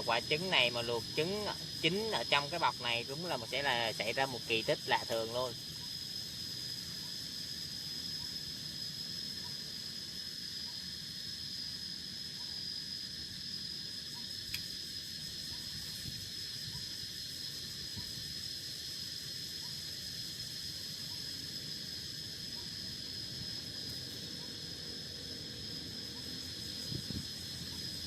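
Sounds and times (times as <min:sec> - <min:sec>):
background hiss: 0:00.0 - 0:28.0
crickets trilling: 0:00.0 - 0:28.0.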